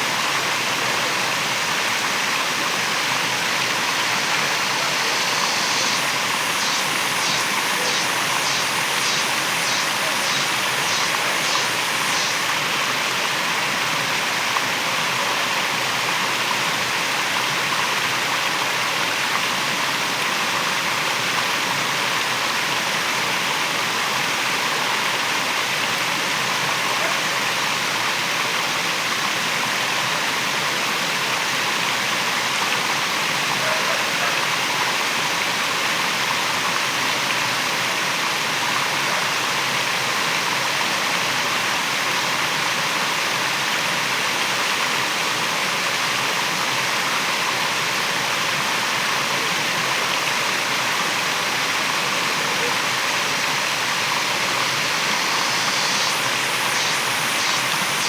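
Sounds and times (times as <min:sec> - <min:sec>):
waterfall rushing water: 0:01.2 - 0:16.5, 0:50.3 - 0:58.0.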